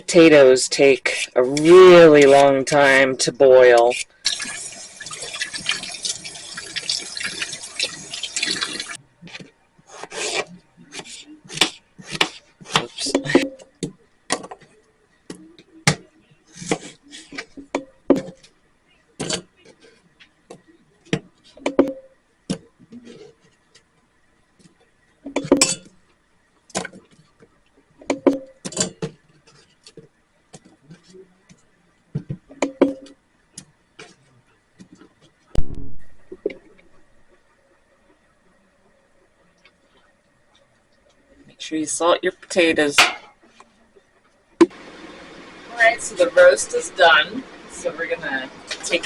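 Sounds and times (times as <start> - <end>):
tap water running into sink: 4.3 - 9.0
cookware and utensils clinking: 25.3 - 25.9, 42.9 - 43.5.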